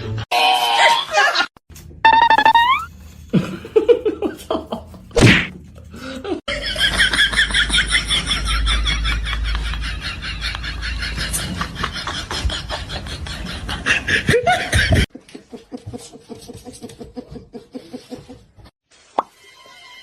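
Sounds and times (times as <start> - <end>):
people laughing: 6.0 - 18.5.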